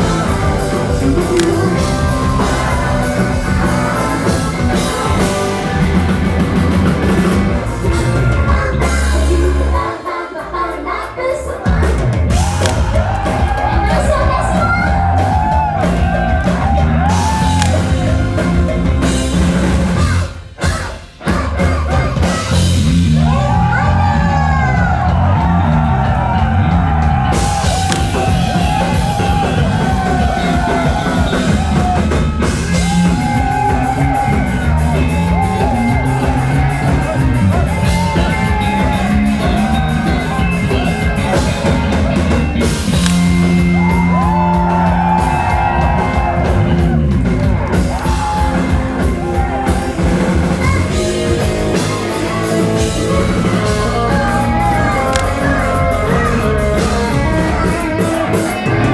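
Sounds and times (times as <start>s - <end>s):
pop rock band playing: 0.0s - 58.9s
woman singing: 8.3s - 12.4s.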